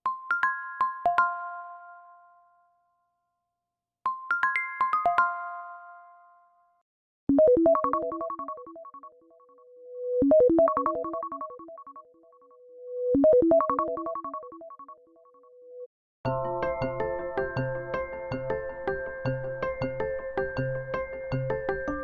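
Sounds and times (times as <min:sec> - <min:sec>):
melodic phone ringtone: 0:04.1 - 0:06.2, 0:07.4 - 0:09.3, 0:10.2 - 0:12.0, 0:13.2 - 0:14.9
bright chime ringtone: 0:04.1 - 0:06.5.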